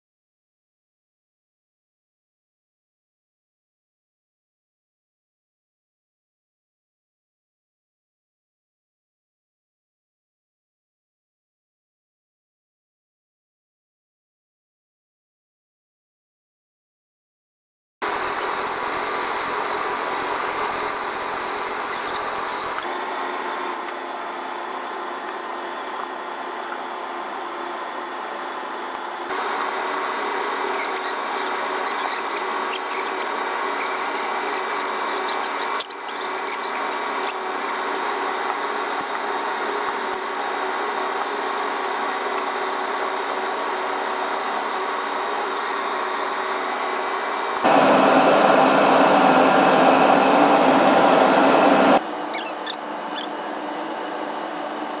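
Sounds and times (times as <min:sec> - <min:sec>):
machinery humming: 0:18.0 - 0:55.0
steady tones: 0:47.6 - 0:52.0.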